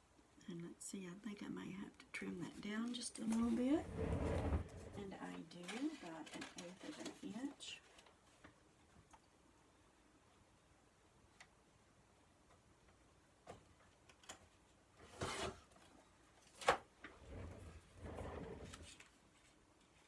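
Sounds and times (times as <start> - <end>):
paper rustling: 4.6 - 8.4.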